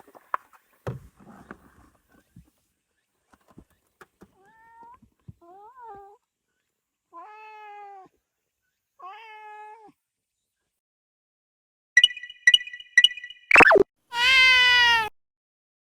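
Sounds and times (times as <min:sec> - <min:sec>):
cat meowing: 0:09.0 - 0:09.9, 0:14.1 - 0:15.1.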